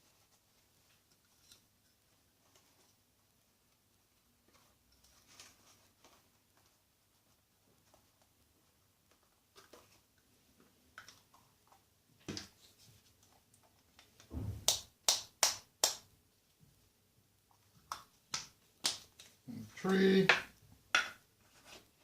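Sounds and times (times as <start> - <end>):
hands tapping packaging: 14.0 - 16.1, 17.8 - 19.4, 20.2 - 21.2.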